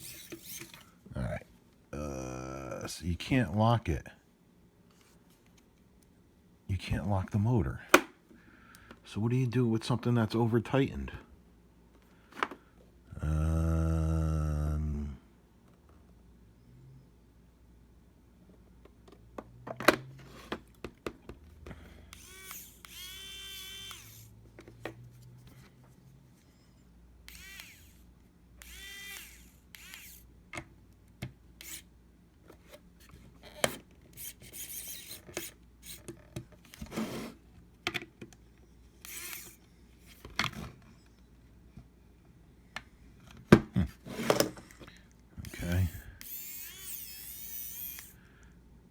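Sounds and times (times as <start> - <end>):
cordless screwdriver motor whirring: 0.0 - 0.8, 22.1 - 24.3, 27.3 - 30.3, 31.6 - 31.9, 33.4 - 36.1, 39.0 - 39.7, 45.4 - 48.2.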